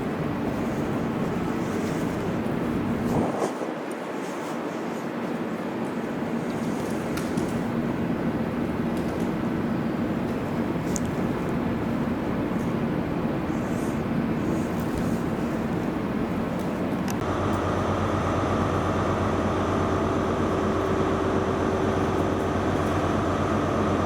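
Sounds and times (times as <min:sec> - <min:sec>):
motor rumbling: 0:07.0 - 0:24.0.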